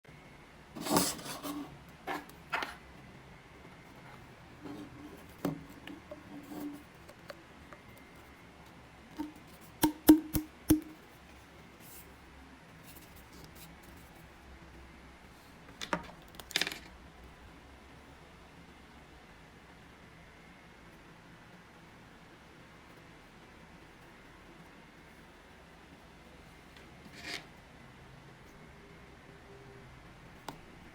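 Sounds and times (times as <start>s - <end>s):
light tapping sounds: 9.2s - 11.0s.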